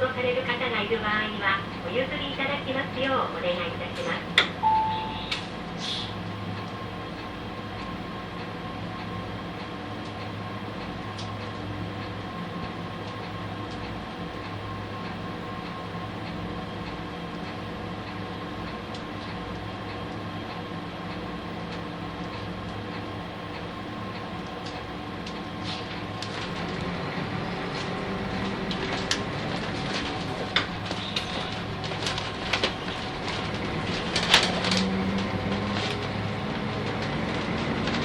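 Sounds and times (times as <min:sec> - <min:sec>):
bus engine running: 0:19.4 - 0:38.0.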